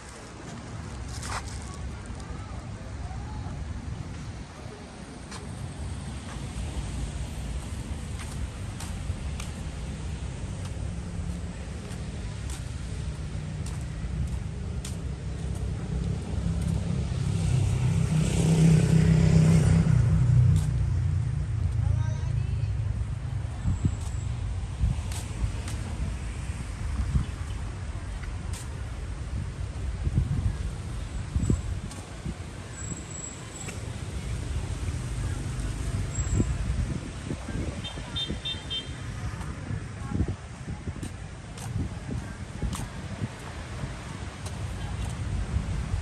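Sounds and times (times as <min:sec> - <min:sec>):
low traffic rumble: 0:00.0 - 0:46.0
vehicle passing close by: 0:15.7 - 0:22.0.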